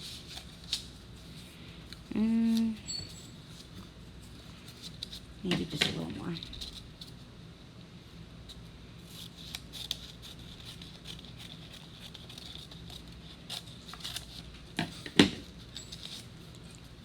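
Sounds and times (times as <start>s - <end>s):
scissors snipping paper: 9.1s - 14.5s
paper rustling: 9.1s - 16.8s.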